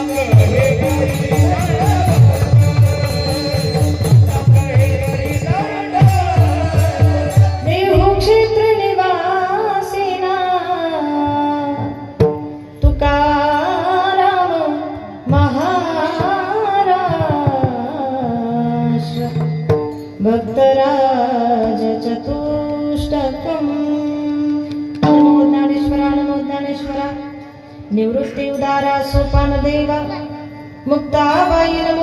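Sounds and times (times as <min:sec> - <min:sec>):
hand drum strokes: 0:00.0 - 0:08.9
woman singing devotional melody: 0:00.0 - 0:32.0.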